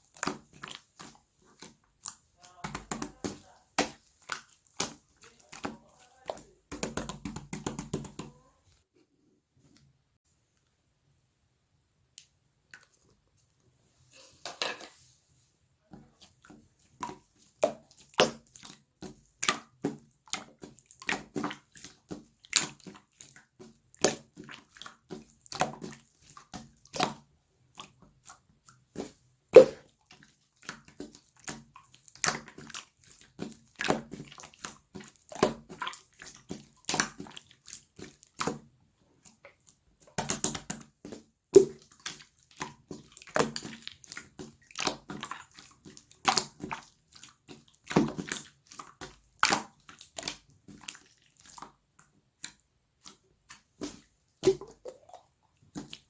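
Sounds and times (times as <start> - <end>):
slime wet pops and clicks: 40.2 - 40.9.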